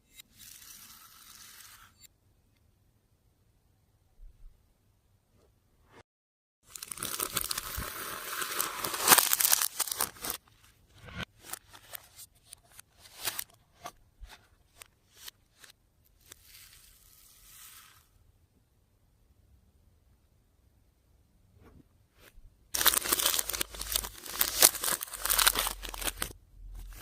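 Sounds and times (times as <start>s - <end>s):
loud crinkling crunching: 6.7s - 10.4s, 22.8s - 27.0s.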